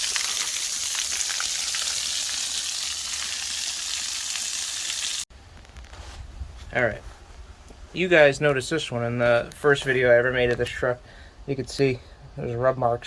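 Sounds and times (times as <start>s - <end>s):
heavy rain hissing: 0.0s - 5.2s.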